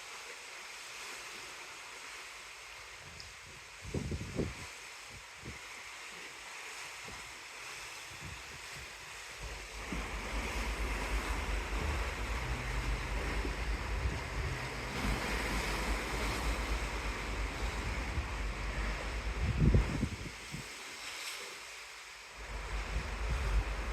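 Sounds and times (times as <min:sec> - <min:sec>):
sea rushing: 0:00.0 - 0:23.9
wind buffeting microphone: 0:03.8 - 0:04.6, 0:08.2 - 0:20.7, 0:22.4 - 0:23.9.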